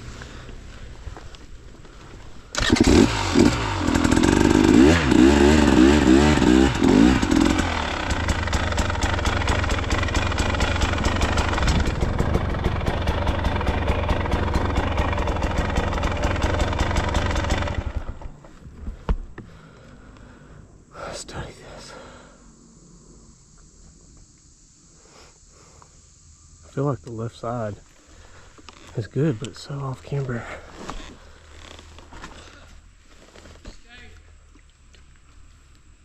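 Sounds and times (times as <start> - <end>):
dirt bike engine revving: 2.5 - 18.4.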